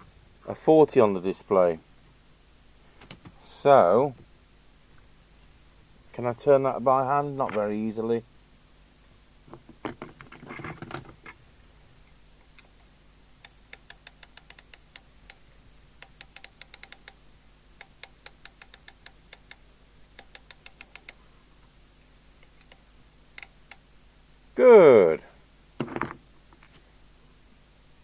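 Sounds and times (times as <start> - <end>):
rotary switch clicking: 17.8 - 19.6, 20.2 - 21.2.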